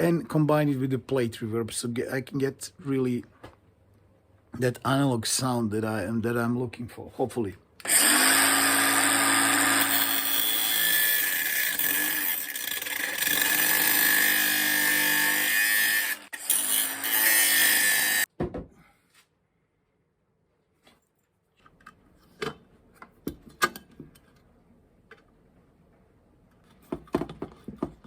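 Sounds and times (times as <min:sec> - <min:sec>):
electric drill running: 0:07.8 - 0:18.3.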